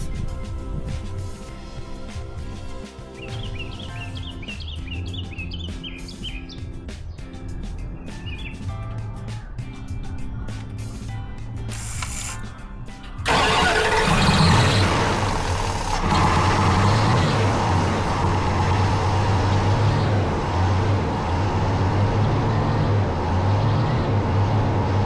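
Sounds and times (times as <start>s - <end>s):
engine running unevenly: 11.7s - 12.4s, 13.2s - 25.0s.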